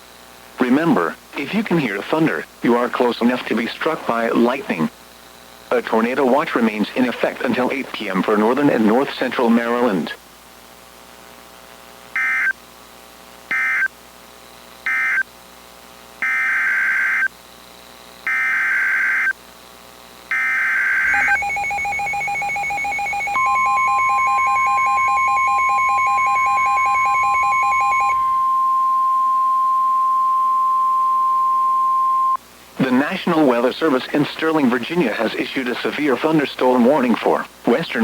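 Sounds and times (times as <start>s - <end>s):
steady warning alarm tone: 12.2s - 12.6s, 13.5s - 13.9s, 14.8s - 15.3s, 16.2s - 17.3s, 18.3s - 19.4s, 20.3s - 32.4s
buzzy data bursts: 20.3s - 28.5s
rapid two-pitch beeping: 20.3s - 32.4s.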